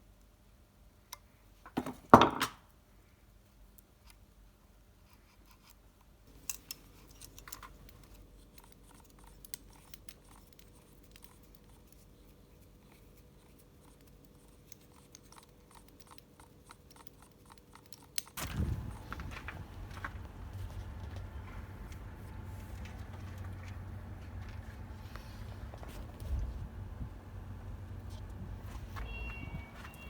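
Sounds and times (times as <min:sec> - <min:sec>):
small parts clicking and scraping: 0:05.1 - 0:18.4
low steady hum: 0:05.9 - 0:30.0.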